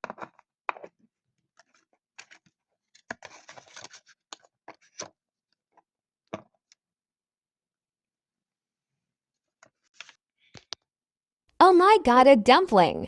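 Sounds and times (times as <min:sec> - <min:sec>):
crinkly wrapping rustling: 0:01.6 - 0:05.1.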